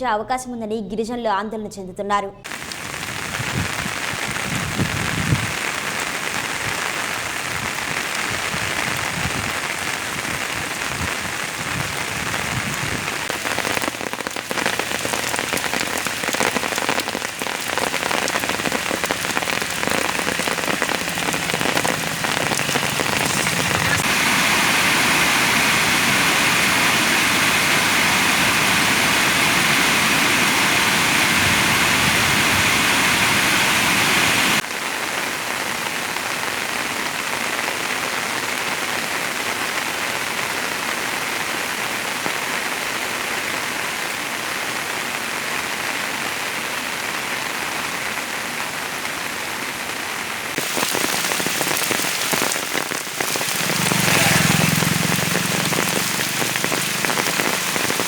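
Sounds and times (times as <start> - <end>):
heavy rain falling: 2.5 - 58.0.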